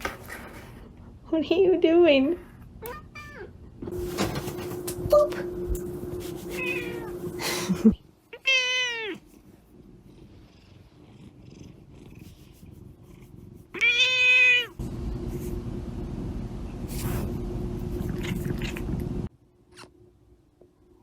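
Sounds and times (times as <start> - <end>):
cat meowing: 6.6 - 7.2, 8.3 - 9.2, 13.8 - 14.8.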